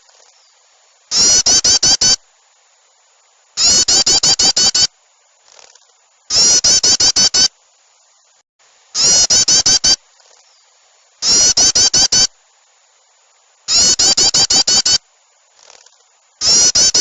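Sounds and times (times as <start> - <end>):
agitated small birds calling: 0.0 - 2.2, 3.6 - 7.5, 9.0 - 12.3, 13.7 - 17.0
bulbul calls: 1.1 - 2.2, 3.6 - 4.9, 6.3 - 7.5, 9.0 - 10.6, 11.2 - 12.3, 13.7 - 15.0, 16.4 - 17.0.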